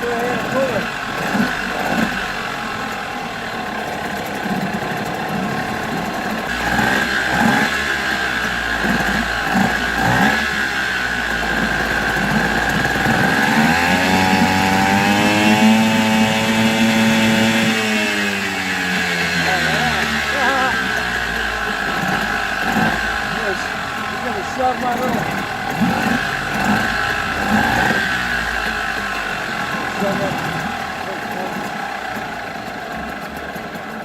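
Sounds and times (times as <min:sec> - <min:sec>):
outboard motor running: 0:00.0 - 0:34.0.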